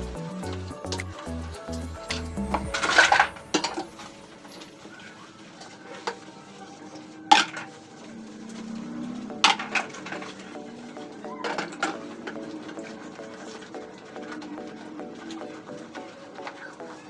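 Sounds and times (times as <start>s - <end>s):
utensils clinking on dishes: 1.6s - 17.0s.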